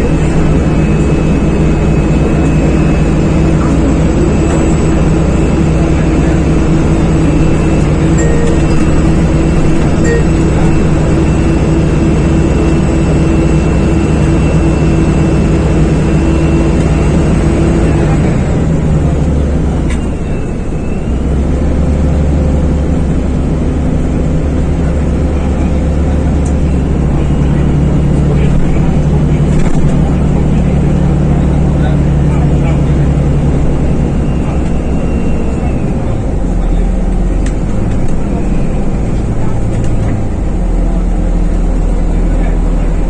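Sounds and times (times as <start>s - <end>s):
engine drone: 0.0s - 43.0s.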